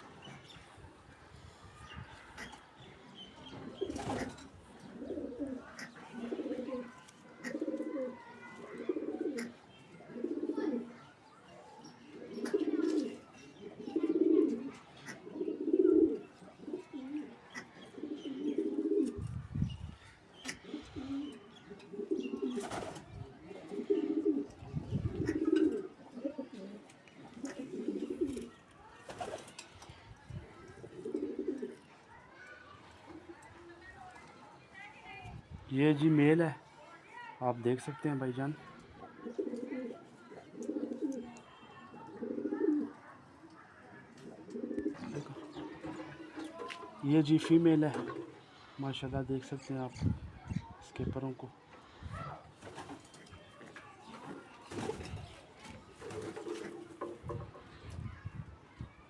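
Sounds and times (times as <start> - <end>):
pigeons cooing: 3.5 - 11.1, 12.0 - 19.4, 20.4 - 28.6, 30.7 - 31.9, 39.1 - 43.0, 44.1 - 46.6.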